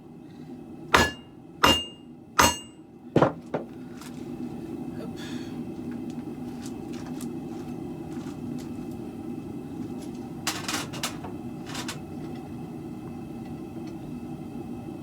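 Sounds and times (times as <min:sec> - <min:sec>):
forge burner roaring: 0:00.0 - 0:03.1, 0:03.7 - 0:15.0.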